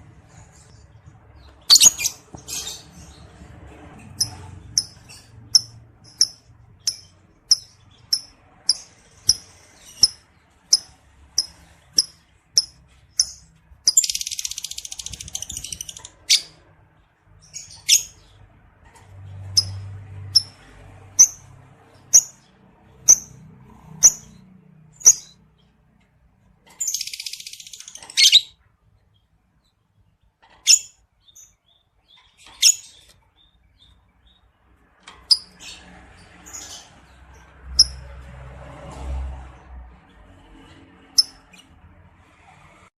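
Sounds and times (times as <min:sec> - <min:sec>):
lovebird chirping and chattering: 0:00.4 - 0:03.5, 0:04.2 - 0:16.6, 0:17.3 - 0:18.4, 0:19.4 - 0:24.4, 0:25.0 - 0:25.7, 0:26.7 - 0:28.6, 0:30.6 - 0:34.4, 0:35.3 - 0:35.8, 0:36.4 - 0:38.0, 0:41.2 - 0:41.6.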